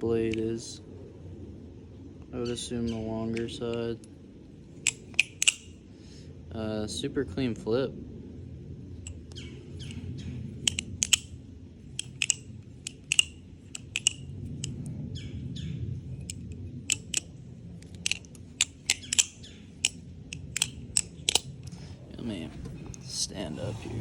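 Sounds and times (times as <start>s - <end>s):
butterfly knife metallic clicks: 4.8s - 5.8s, 10.6s - 11.4s, 12.0s - 14.8s, 16.2s - 21.5s.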